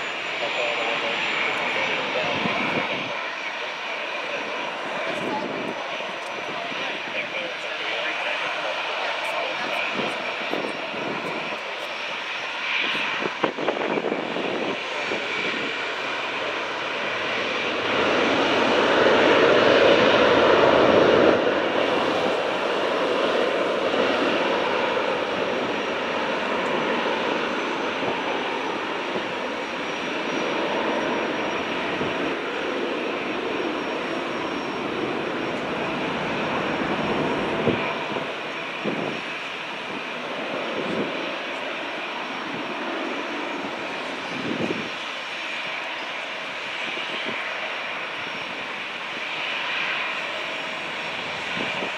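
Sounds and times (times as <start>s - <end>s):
jet airliner taking off: 0.0s - 51.9s.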